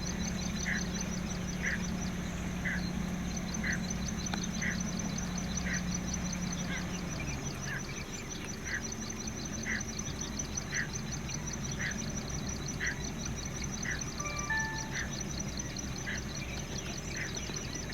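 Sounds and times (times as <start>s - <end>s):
bird warning calls: 0.0s - 17.9s.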